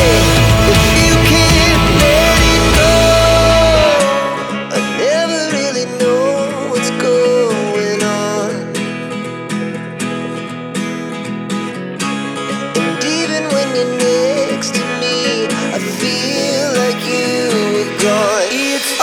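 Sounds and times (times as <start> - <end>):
acoustic guitar strumming: 0.0 - 19.0.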